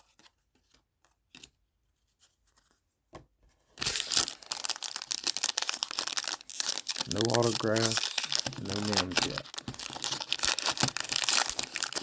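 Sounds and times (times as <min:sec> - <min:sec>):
foil wrapper tearing and crinkling: 0:03.8 - 0:12.0.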